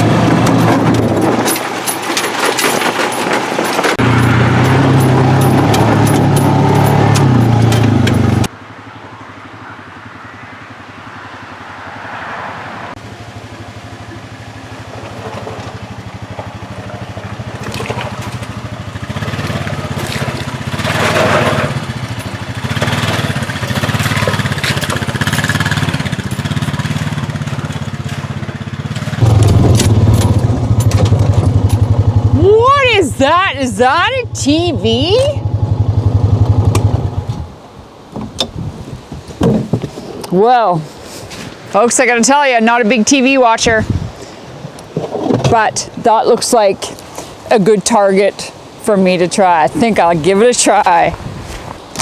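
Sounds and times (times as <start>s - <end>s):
wind noise: 0.0s - 1.8s, 29.2s - 41.7s, 43.5s - 46.1s, 49.6s - 52.0s
engine running while driving: 0.0s - 37.8s.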